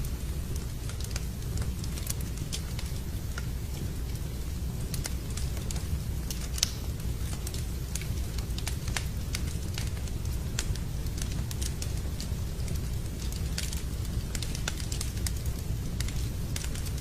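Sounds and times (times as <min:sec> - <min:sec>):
fire crackling and popping: 0:00.0 - 0:17.0
fire flames rumbling: 0:00.0 - 0:17.0.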